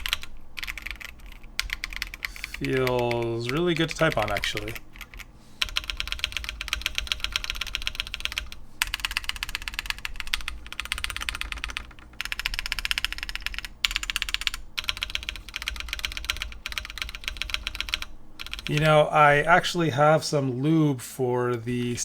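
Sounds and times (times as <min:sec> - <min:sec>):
fast typing on mechanical keyboard: 0:00.0 - 0:19.5.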